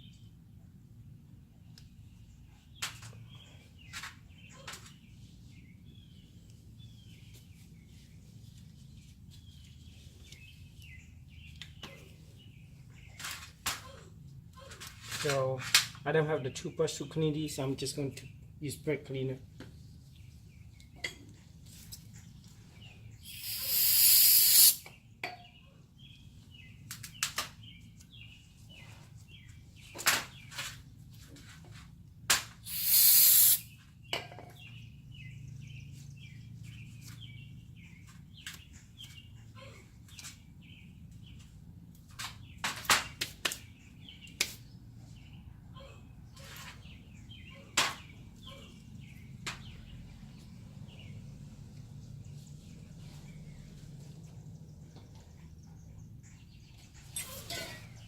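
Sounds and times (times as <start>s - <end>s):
birds chirping: 22.0s - 30.6s, 32.7s - 41.6s
aerosol spray bursts: 23.3s - 24.8s, 32.7s - 33.7s.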